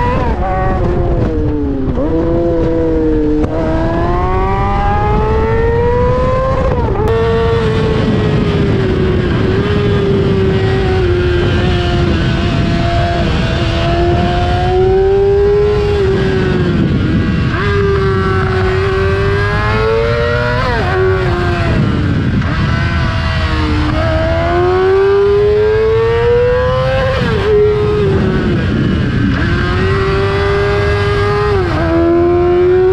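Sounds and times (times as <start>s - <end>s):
motorcycle engine revving high: 0.0s - 32.9s.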